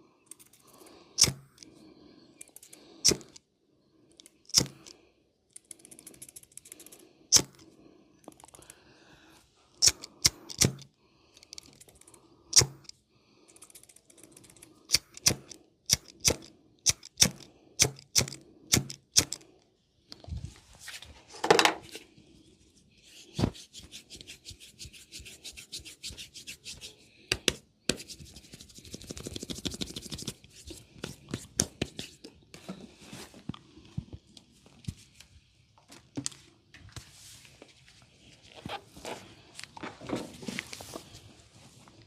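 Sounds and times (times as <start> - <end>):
hands rubbing skin: 23.0 - 27.0, 27.9 - 32.3.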